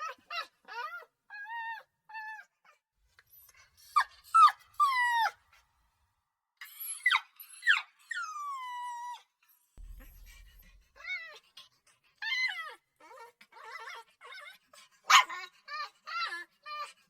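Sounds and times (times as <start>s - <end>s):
puppy whining: 0.0s - 5.6s, 6.6s - 11.2s, 12.2s - 17.0s
faint low hum: 9.8s - 10.9s.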